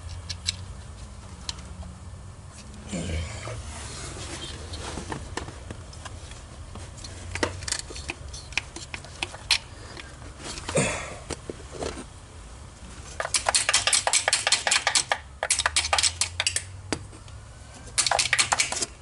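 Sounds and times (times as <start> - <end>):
ratchet clicking: 13.2 - 16.7, 18.0 - 18.9.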